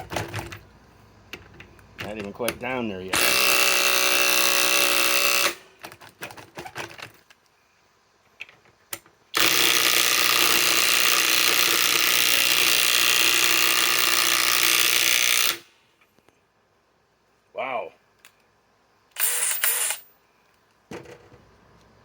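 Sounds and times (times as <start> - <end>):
impact wrench hammering: 19.2 - 20.0.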